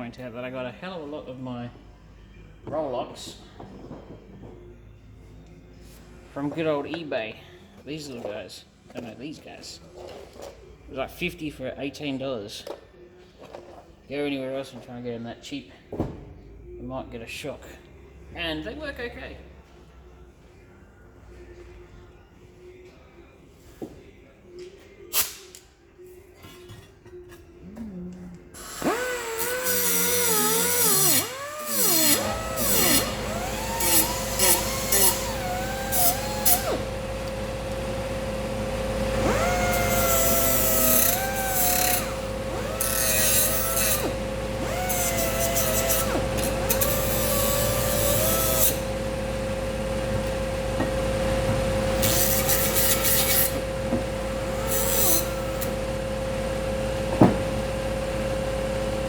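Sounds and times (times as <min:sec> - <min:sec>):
power tool grinding metal: 0:28.6 - 0:57.8.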